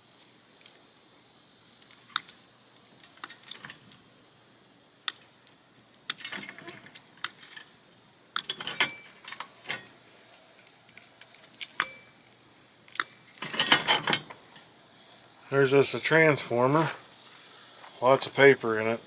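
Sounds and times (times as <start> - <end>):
metal parts and tools clattering: 3.2 - 3.9, 6.1 - 7.8, 8.4 - 9.9, 11.4 - 12.2, 13.2 - 14.7.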